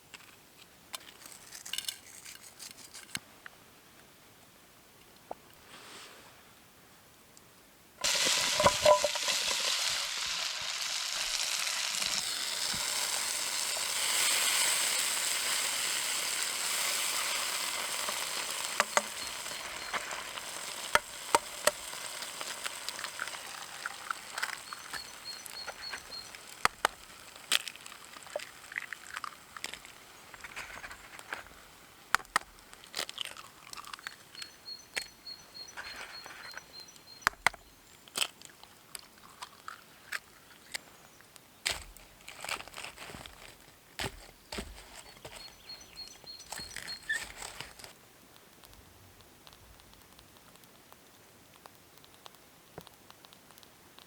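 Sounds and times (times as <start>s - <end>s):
food sizzling in a hot pan: 8.0s - 28.4s
sharp pops and crackles: 8.0s - 54.0s.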